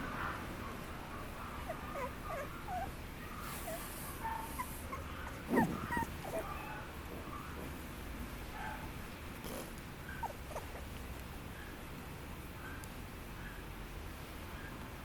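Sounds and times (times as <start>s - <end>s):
puppy yip: 1.2s - 7.6s, 10.1s - 10.8s
puppy whimpering: 1.6s - 6.8s, 10.1s - 10.9s.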